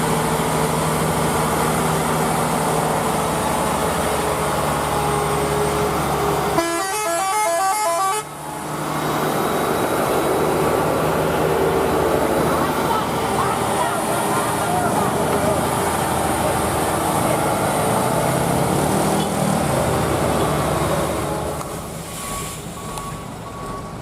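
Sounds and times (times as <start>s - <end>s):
rain noise: 0.0s - 6.8s, 8.2s - 24.0s
truck engine running: 0.0s - 24.0s
musical vehicle horn: 6.5s - 8.4s.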